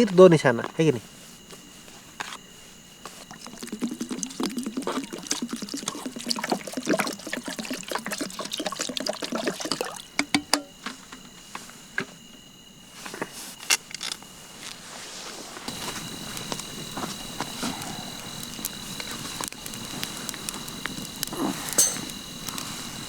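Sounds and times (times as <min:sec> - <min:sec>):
water pouring into a pot: 0:03.2 - 0:10.3
pot clicking and knocking: 0:10.2 - 0:10.7, 0:21.7 - 0:22.2.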